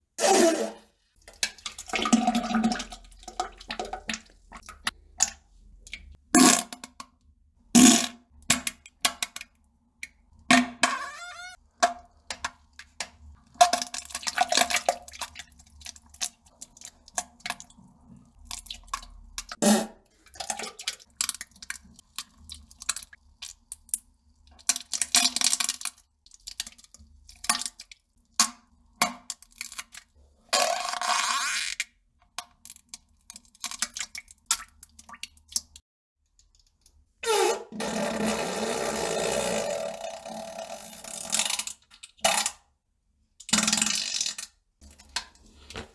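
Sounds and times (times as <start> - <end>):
plops and splashes in toilet: 0.2 - 31.0, 32.3 - 35.8, 43.3 - 45.9
farting: 10.9 - 11.6.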